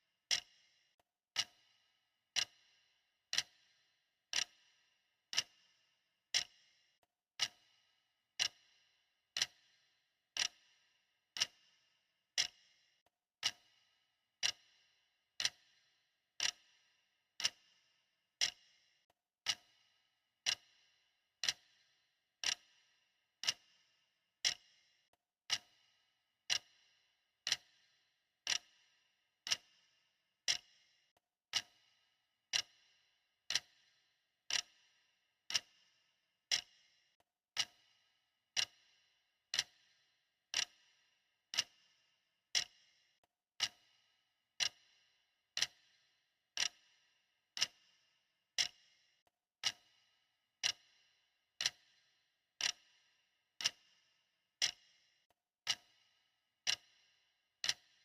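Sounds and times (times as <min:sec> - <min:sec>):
clock ticking: 0:00.3 - 0:00.5, 0:01.3 - 0:01.6, 0:02.3 - 0:02.6, 0:03.3 - 0:03.6, 0:04.3 - 0:04.6, 0:05.3 - 0:05.6, 0:06.4 - 0:06.6, 0:08.4 - 0:08.6, 0:09.4 - 0:09.6, 0:10.4 - 0:10.6, 0:11.4 - 0:11.6, 0:12.4 - 0:12.6, 0:13.4 - 0:13.7, 0:14.4 - 0:14.7, 0:15.4 - 0:15.7, 0:16.4 - 0:16.7, 0:17.4 - 0:17.6, 0:18.4 - 0:18.6, 0:19.4 - 0:19.7, 0:20.4 - 0:20.7, 0:21.4 - 0:21.7, 0:22.4 - 0:22.7, 0:23.4 - 0:23.6, 0:24.4 - 0:24.7, 0:25.5 - 0:25.8, 0:26.5 - 0:26.8, 0:27.4 - 0:27.8, 0:28.5 - 0:28.7, 0:29.5 - 0:29.7, 0:30.5 - 0:30.7, 0:31.5 - 0:31.8, 0:32.5 - 0:32.8, 0:33.5 - 0:33.8, 0:34.5 - 0:34.8, 0:35.5 - 0:35.8, 0:36.5 - 0:36.7, 0:37.5 - 0:37.8, 0:38.5 - 0:38.8, 0:39.5 - 0:39.8, 0:40.5 - 0:40.8, 0:41.5 - 0:41.8, 0:43.6 - 0:43.8, 0:44.6 - 0:44.8, 0:45.6 - 0:45.8, 0:46.6 - 0:46.8, 0:47.6 - 0:47.8, 0:48.6 - 0:48.8, 0:49.6 - 0:49.9, 0:50.6 - 0:50.9, 0:51.6 - 0:51.9, 0:52.6 - 0:52.9, 0:53.6 - 0:53.9, 0:54.6 - 0:54.9, 0:55.6 - 0:55.9, 0:56.6 - 0:56.9, 0:57.6 - 0:57.9.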